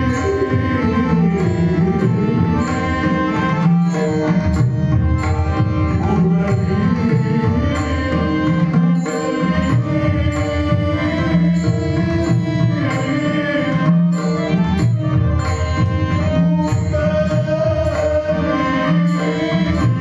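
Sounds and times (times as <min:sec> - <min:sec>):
sustained melodic accompaniment: 0:00.0 - 0:20.0.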